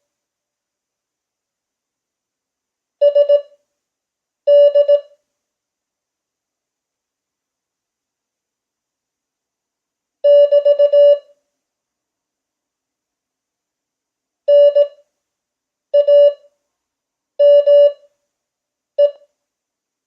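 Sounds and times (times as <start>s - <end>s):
morse code practice tone: 3.0s - 3.5s, 4.5s - 5.1s, 10.3s - 11.3s, 14.5s - 15.0s, 16.0s - 16.4s, 17.4s - 18.0s, 19.0s - 19.2s.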